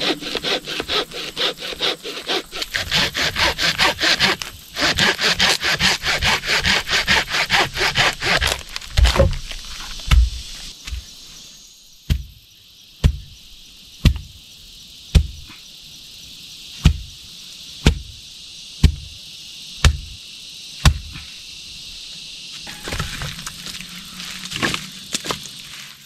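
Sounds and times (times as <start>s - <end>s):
sharp blows on wood: 0.0s - 9.3s
crickets chirring: 0.0s - 26.0s
rustling and crinkling: 8.1s - 11.0s, 22.7s - 26.0s.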